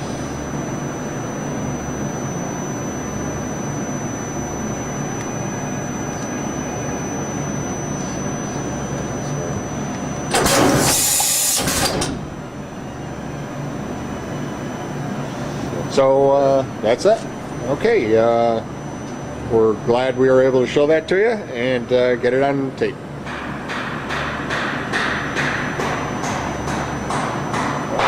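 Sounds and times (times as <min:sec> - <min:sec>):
machining center humming: 0:00.0 - 0:28.0
loud hiss: 0:10.3 - 0:12.0.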